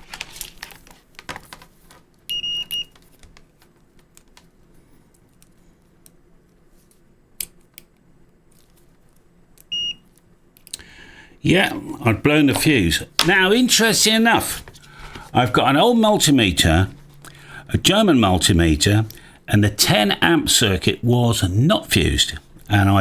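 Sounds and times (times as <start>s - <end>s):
multimeter beeping: 2.3s - 2.9s, 9.7s - 10.0s.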